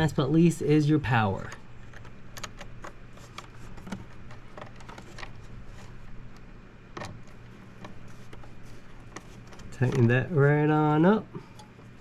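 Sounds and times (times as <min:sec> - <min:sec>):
low steady hum: 0:00.0 - 0:12.0
small clicks and rattles: 0:01.4 - 0:10.3.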